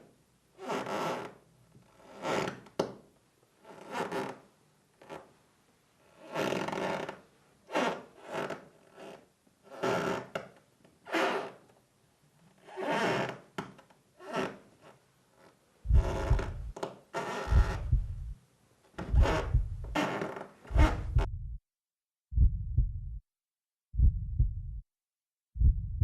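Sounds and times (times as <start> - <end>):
short rasping noises: 15.9 - 16.7
deep low rumble: 15.9 - 16.8, 17.5 - 18.4, 19.1 - 20.0, 20.8 - 21.6, 22.4 - 23.2, 24.0 - 24.8, 25.6 - 26.0.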